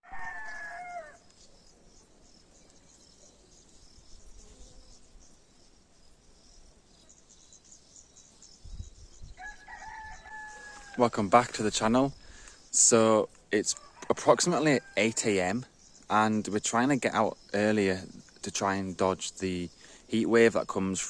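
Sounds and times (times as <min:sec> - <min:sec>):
rooster crowing: 0:00.0 - 0:01.2, 0:09.4 - 0:11.1, 0:13.7 - 0:15.3
insects chirping: 0:00.0 - 0:21.0.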